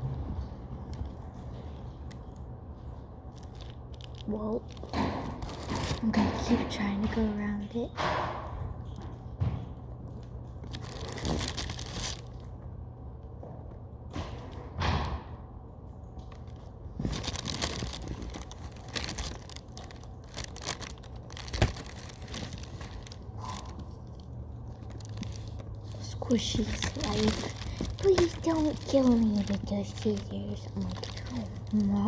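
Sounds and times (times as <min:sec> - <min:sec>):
handling rustle: 0:03.3 - 0:06.1, 0:10.2 - 0:12.5, 0:16.3 - 0:32.0.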